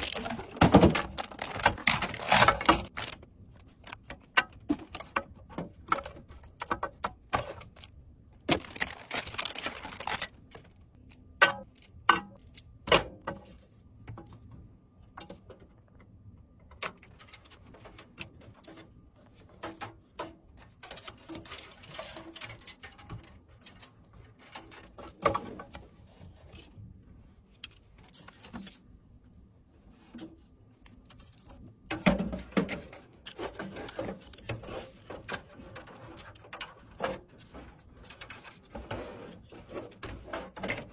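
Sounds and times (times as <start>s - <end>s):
computer parts clicking and knocking: 0.0s - 3.2s
rustling: 0.0s - 3.2s.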